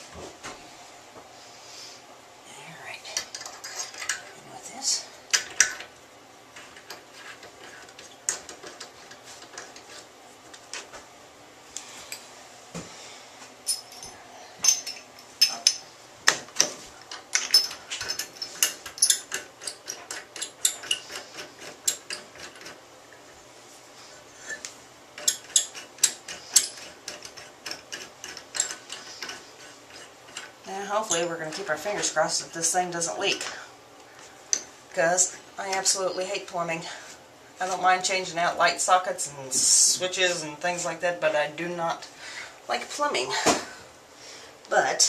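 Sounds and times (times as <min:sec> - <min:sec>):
metal tools and parts clinking: 0:13.6 - 0:15.9, 0:17.1 - 0:22.6, 0:25.2 - 0:29.4.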